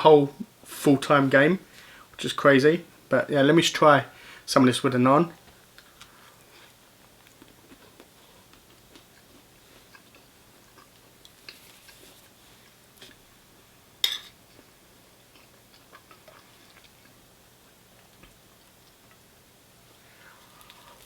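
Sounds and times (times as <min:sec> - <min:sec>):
person chewing bread: 0:05.5 - 0:13.3, 0:14.4 - 0:19.3, 0:20.1 - 0:21.0.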